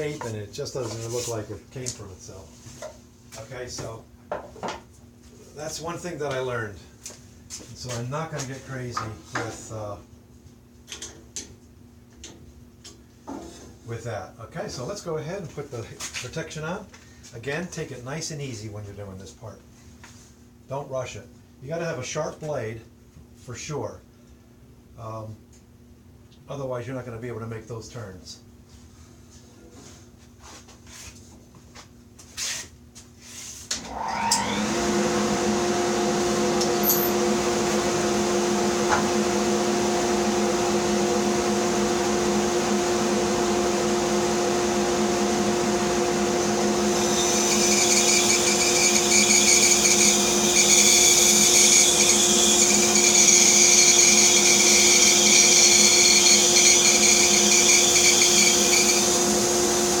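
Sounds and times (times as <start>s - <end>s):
bandsaw motor humming: 33.8s - 60.0s
bandsaw blade cutting wood: 36.6s - 37.3s, 46.4s - 60.0s.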